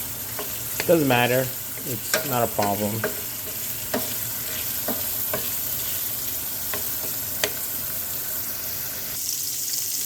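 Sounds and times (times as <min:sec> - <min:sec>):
meat sizzling in a frying pan: 0:00.0 - 0:10.0
utensil knocking against pan: 0:02.1 - 0:04.2.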